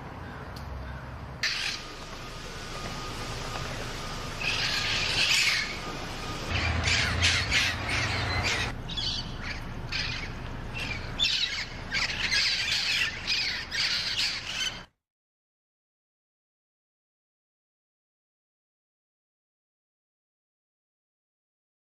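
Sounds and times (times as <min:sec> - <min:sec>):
parrots squawking: 0:01.4 - 0:02.0, 0:04.3 - 0:14.9.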